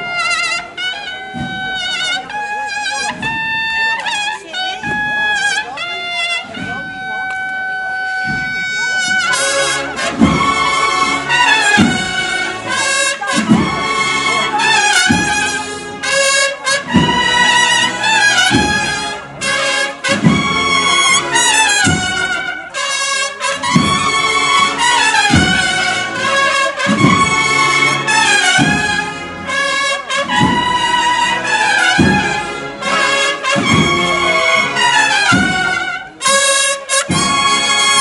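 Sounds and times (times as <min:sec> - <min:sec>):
brass band playing slow march: 0:00.0 - 0:38.0
deep drum beat: 0:00.0 - 0:38.0.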